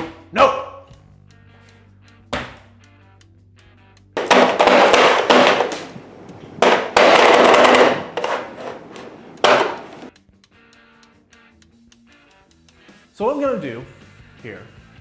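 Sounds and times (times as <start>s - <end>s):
loud crashing bangs: 4.2s - 10.1s.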